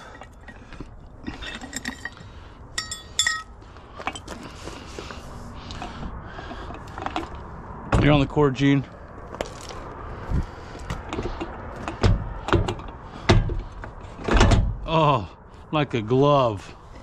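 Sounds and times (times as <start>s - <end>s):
metal clinking: 1.2s - 4.5s
sharp ringing metal clinks: 2.8s - 3.5s.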